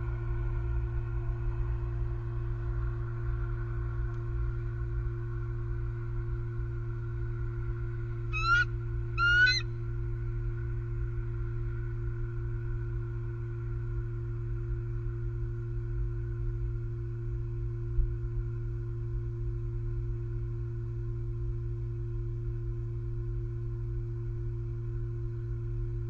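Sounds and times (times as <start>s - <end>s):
electrical hum: 0.0s - 26.0s
eagle chittering calls: 8.3s - 9.7s.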